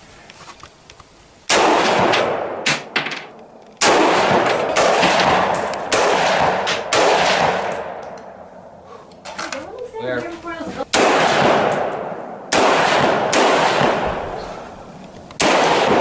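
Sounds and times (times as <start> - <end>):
echoing gunshots: 1.5 - 8.8, 10.9 - 16.0.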